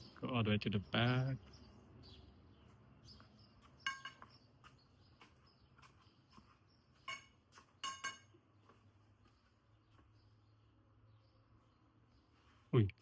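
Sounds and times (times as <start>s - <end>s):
ringing metallic clinks: 7.1s - 8.3s.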